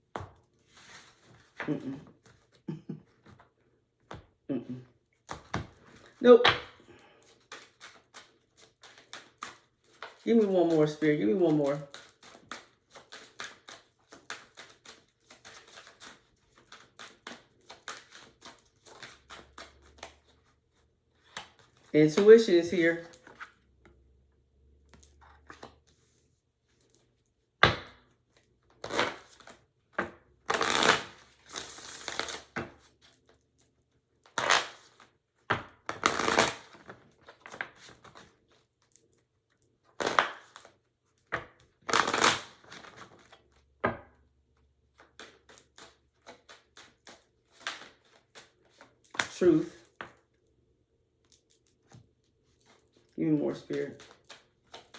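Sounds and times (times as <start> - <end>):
cards being shuffled: 7.4 - 23.4, 28.8 - 33.0, 34.2 - 38.6, 39.9 - 43.4, 45.0 - 50.2, 53.4 - 54.9.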